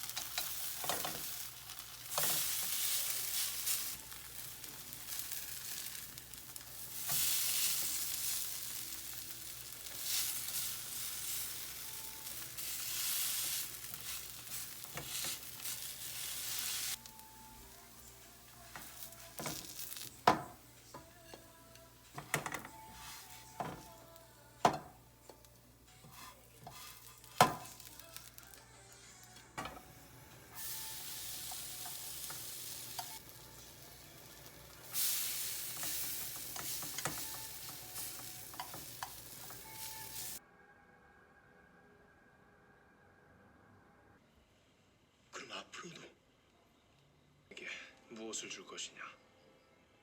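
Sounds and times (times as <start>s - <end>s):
food sizzling in frying pan: 0.0s - 28.6s, 29.6s - 40.4s.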